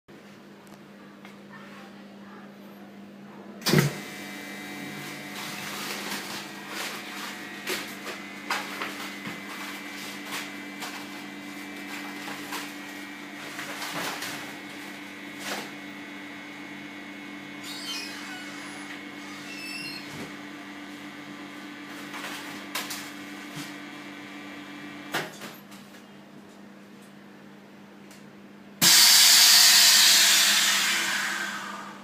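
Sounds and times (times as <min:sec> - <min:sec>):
vacuum machine humming: 0:03.6 - 0:25.3, 0:28.8 - 0:32.0.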